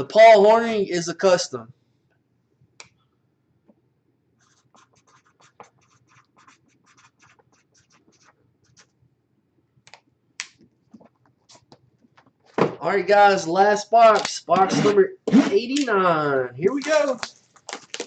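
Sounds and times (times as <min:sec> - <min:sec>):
faint scratching: 0:04.4 - 0:09.0.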